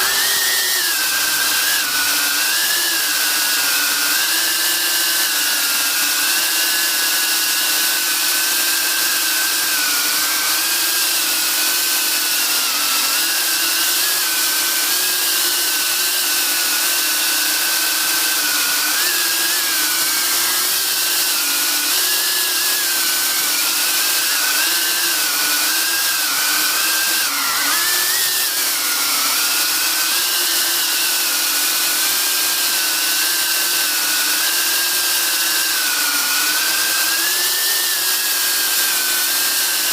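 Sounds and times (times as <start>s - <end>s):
drone motors whining: 0.0s - 6.5s, 17.3s - 31.4s.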